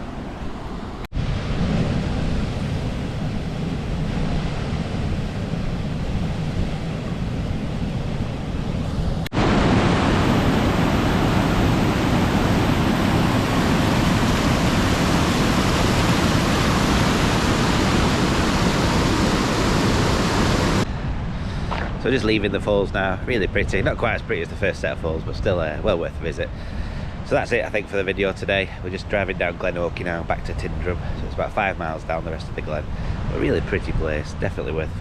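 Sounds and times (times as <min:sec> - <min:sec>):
waterfall roaring: 0:09.3 - 0:20.8.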